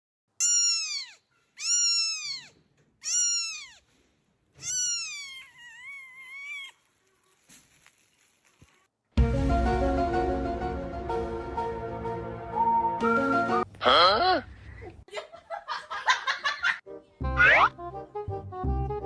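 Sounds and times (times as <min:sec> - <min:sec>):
cat meowing: 0:00.4 - 0:04.0, 0:04.6 - 0:06.9.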